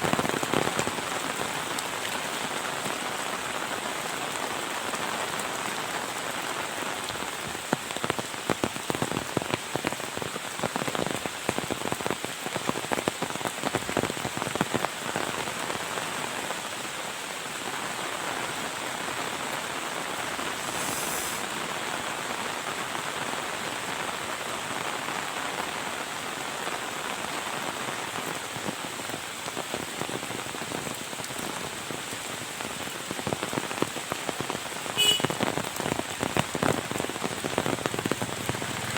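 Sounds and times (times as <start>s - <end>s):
heavy rain hissing: 9.8s - 38.9s.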